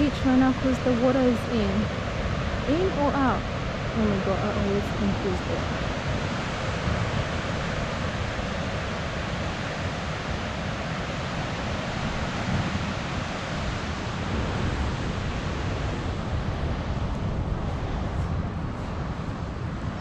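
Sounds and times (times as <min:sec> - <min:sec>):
ocean surf: 0:00.0 - 0:20.0
wind buffeting microphone: 0:00.0 - 0:20.0.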